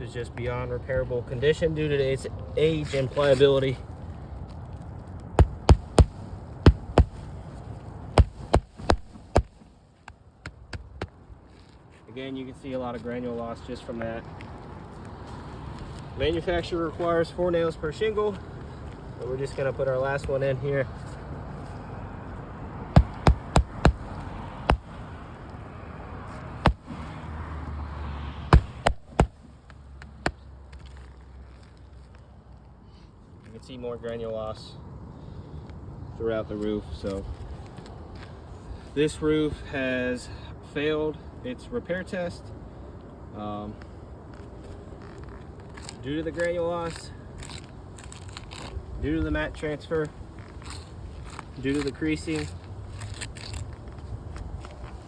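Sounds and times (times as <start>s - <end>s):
hammer striking roofing nails: 5.4s - 7.3s, 8.2s - 9.6s, 23.0s - 25.0s, 26.6s - 27.0s, 28.5s - 29.5s.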